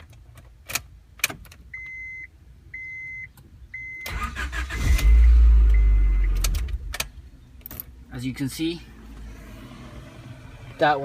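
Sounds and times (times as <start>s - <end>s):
dashboard warning chime beeping: 1.7s - 6.9s
starter cranking engine: 4.1s - 5.1s.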